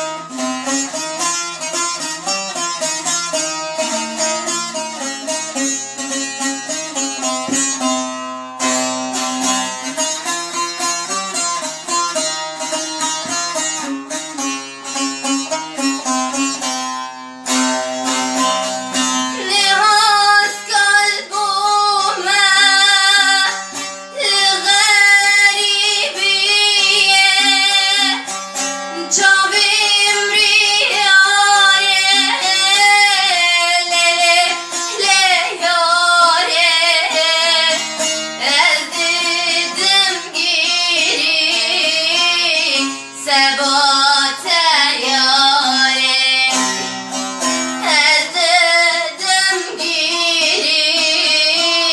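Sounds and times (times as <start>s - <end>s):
plucked string accompaniment: 0.0s - 51.9s
woman singing with vibrato: 19.3s - 28.3s, 28.9s - 47.0s, 47.8s - 51.9s.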